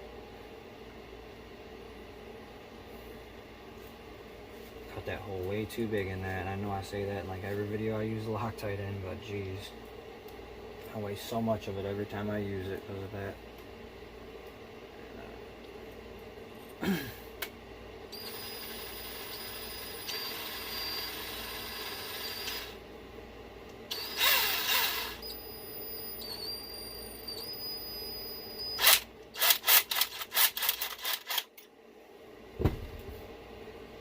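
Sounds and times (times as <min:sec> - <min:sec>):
electric drill motor whining: 0:18.2 - 0:22.8, 0:23.9 - 0:31.4.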